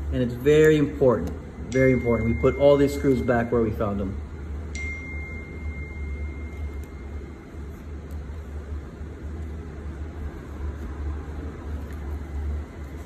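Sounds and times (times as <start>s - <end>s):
low background hum: 0.0s - 13.0s
thin high metallic ring: 1.7s - 4.1s, 4.7s - 7.8s.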